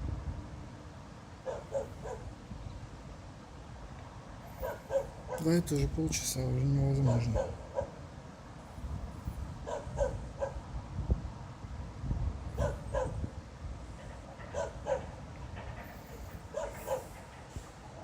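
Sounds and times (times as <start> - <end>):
dog barking: 1.4 - 2.3, 4.6 - 5.4, 7.1 - 8.0, 9.6 - 10.6, 12.6 - 13.2, 14.5 - 15.1, 16.5 - 17.1.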